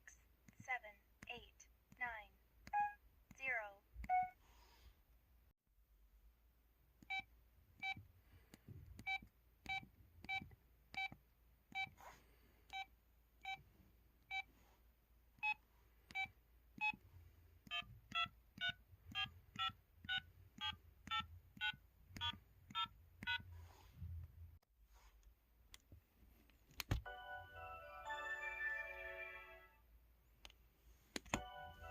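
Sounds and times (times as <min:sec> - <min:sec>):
phone keypad beeps: 0:04.0 - 0:04.4, 0:07.0 - 0:08.0, 0:09.0 - 0:11.9, 0:12.7 - 0:13.6, 0:14.3 - 0:14.5, 0:15.4 - 0:17.0, 0:17.7 - 0:23.4, 0:31.4 - 0:31.9
keypad clicks: 0:17.6 - 0:23.4, 0:31.2 - 0:31.9.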